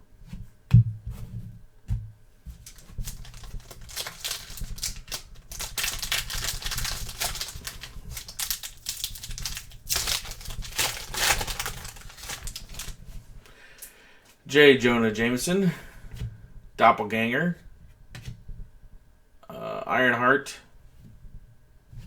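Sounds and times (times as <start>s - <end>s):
cards rustling and sliding: 2.5s - 13.0s.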